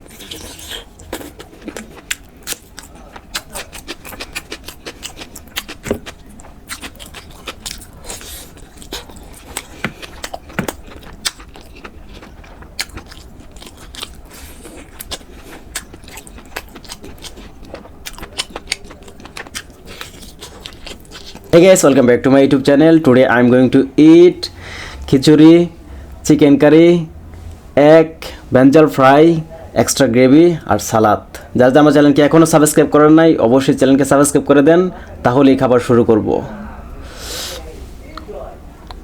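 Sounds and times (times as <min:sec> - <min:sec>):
crisp crunches of eating: 0:00.0 - 0:21.5
low steady hum: 0:00.0 - 0:39.0.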